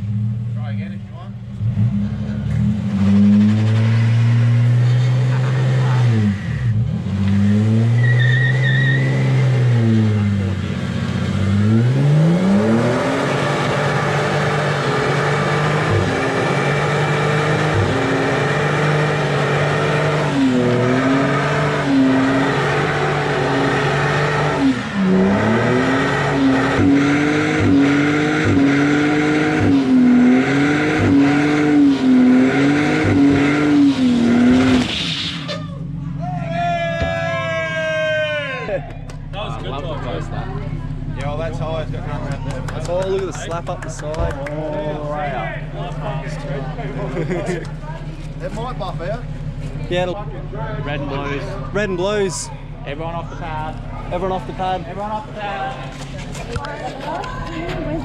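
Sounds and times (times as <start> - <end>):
car engine revving hard: 1.5 - 35.5
tyre squeal: 7.3 - 9.6.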